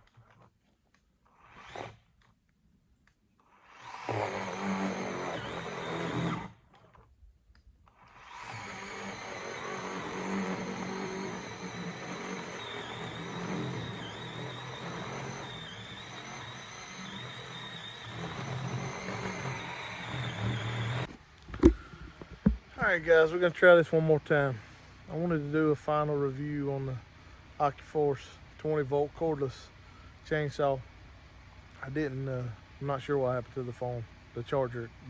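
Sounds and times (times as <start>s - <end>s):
electric chainsaw cutting wood: 1.3s - 2.3s, 3.4s - 7.1s, 7.9s - 21.8s.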